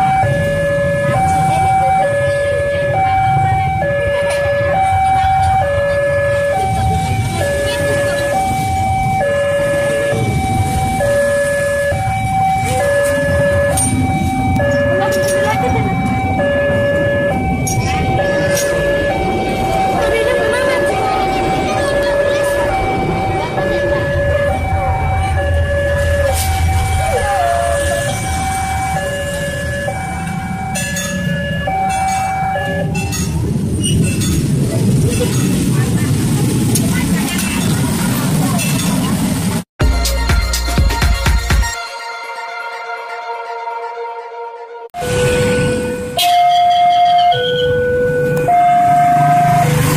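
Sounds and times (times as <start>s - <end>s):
level-crossing alarm two-tone siren: 0.0s - 33.4s, 41.7s - 49.9s
low traffic rumble: 0.0s - 39.7s, 45.0s - 49.9s.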